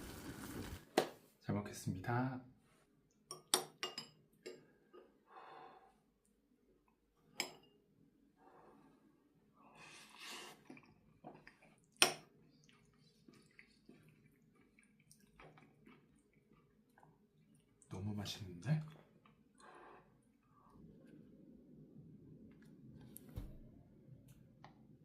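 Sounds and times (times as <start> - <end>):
spoon clinking against bowl: 3.3 - 4.6
breathing: 4.6 - 6.1, 8.4 - 10.6, 19.6 - 20.8
soft eating sounds: 8.4 - 23.3.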